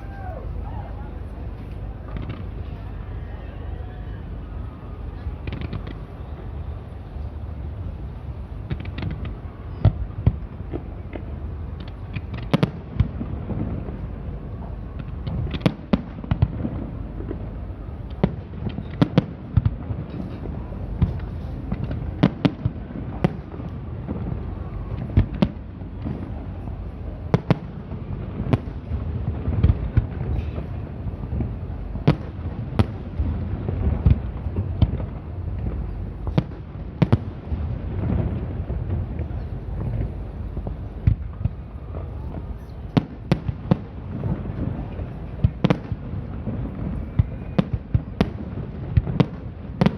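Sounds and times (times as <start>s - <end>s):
fireworks bursting: 5.0s - 49.9s
steady low rumble: 19.3s - 49.8s.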